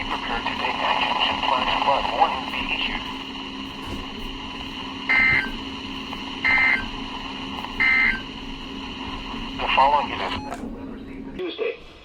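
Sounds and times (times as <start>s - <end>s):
radio hiss: 0.0s - 10.9s
warbling digital data tones: 5.0s - 5.7s, 6.3s - 10.6s.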